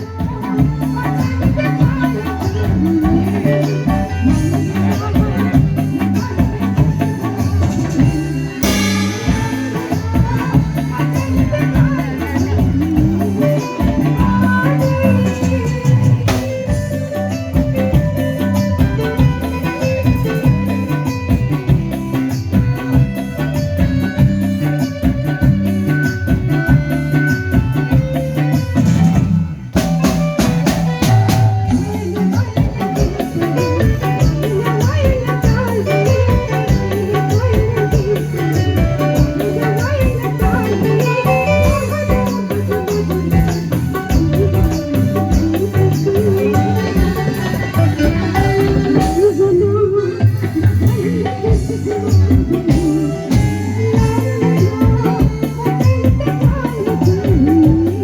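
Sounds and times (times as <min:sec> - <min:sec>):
rock band instrumental: 0:00.0 - 0:58.0
heavy drum hits: 0:08.6 - 0:11.0.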